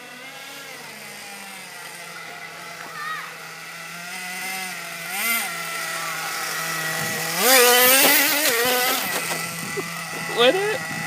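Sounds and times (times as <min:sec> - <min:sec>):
small two-stroke engine revving: 0:00.0 - 0:11.0.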